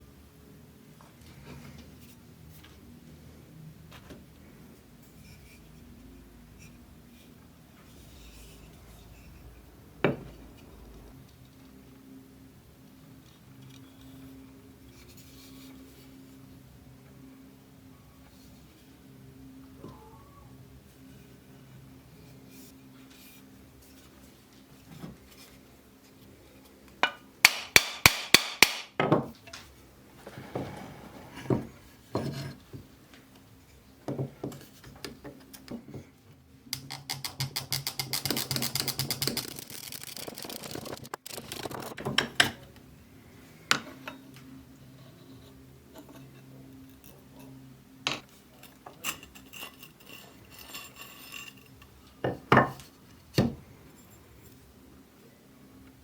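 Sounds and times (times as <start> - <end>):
rapid scraping strokes: 37.8 - 42.0.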